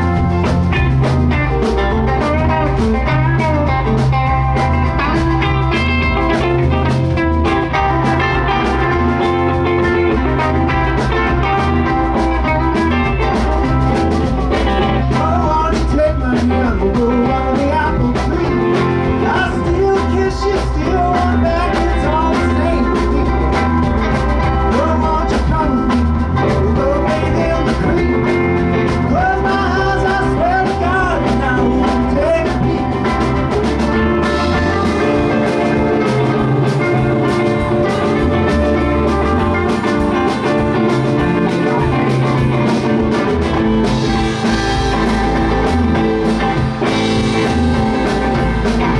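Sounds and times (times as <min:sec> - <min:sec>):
electric guitar slides: 0:00.0 - 0:48.9
live blues-rock band: 0:00.0 - 0:48.9
person singing: 0:14.5 - 0:48.9.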